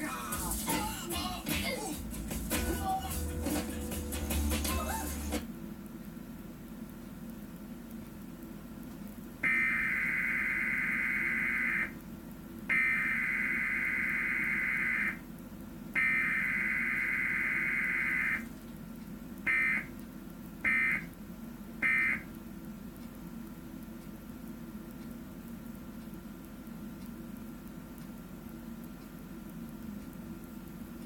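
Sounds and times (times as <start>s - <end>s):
short data tone bursts: 9.4s - 12.0s, 12.7s - 15.2s, 16.0s - 18.5s, 19.5s - 19.9s, 21.8s - 22.2s
warbling data tone bursts: 9.4s - 12.0s, 12.7s - 15.2s, 16.0s - 18.5s, 19.5s - 19.9s.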